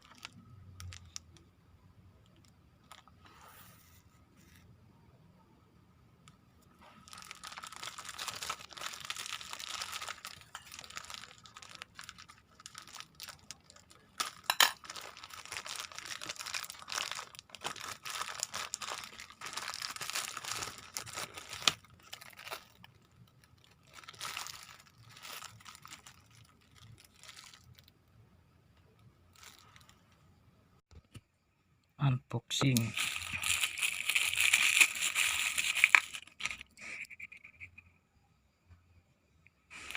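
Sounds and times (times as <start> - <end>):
plastic packaging crinkling and tearing: 0.0 - 1.4, 6.8 - 27.9, 29.3 - 30.0, 32.6 - 37.2.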